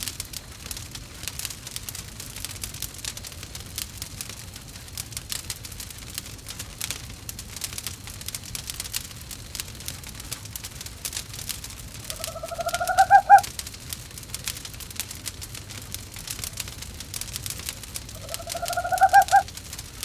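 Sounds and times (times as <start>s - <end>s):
wood fire crackling and popping: 0.0s - 20.0s
owl call: 12.0s - 13.5s, 18.2s - 19.5s.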